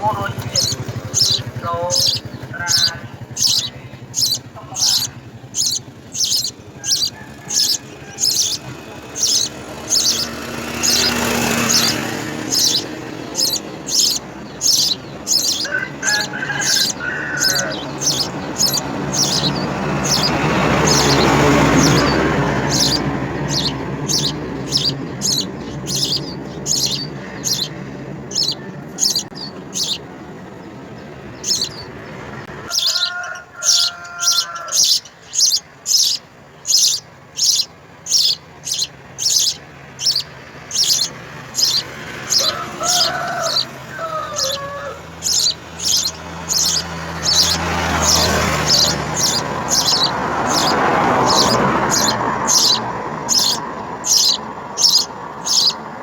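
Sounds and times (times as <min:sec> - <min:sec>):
sparrow chirping: 0:00.0 - 0:56.0.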